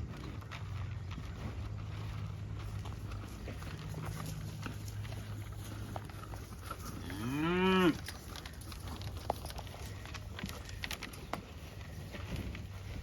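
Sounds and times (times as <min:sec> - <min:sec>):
low steady hum: 0:00.0 - 0:13.0
cow mooing: 0:06.9 - 0:08.1.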